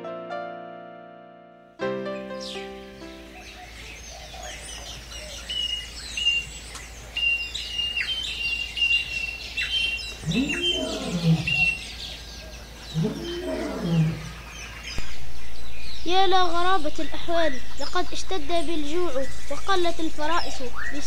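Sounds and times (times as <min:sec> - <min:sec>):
birds singing and chirping: 0:02.2 - 0:21.0
lower rising and falling call: 0:07.2 - 0:14.8.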